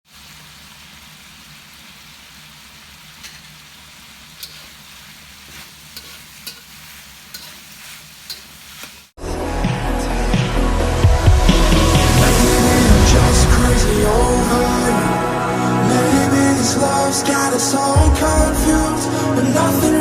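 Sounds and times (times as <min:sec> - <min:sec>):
food sizzling in oil: 0:00.1 - 0:09.2.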